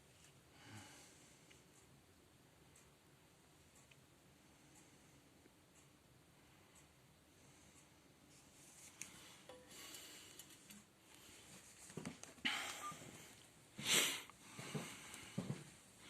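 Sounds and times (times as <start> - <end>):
person sniffing and breathing: 12.4 - 15.5.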